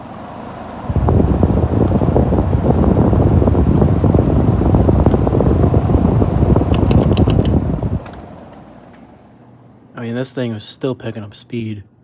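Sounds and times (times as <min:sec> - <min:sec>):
ceiling fan airflow rumble: 0:00.0 - 0:12.0
quick run of clicks: 0:06.7 - 0:07.6.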